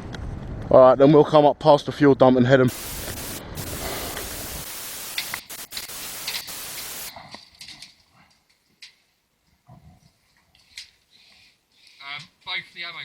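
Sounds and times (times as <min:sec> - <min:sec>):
sharp clicks: 0:02.7 - 0:07.1
steady hiss: 0:02.7 - 0:07.1.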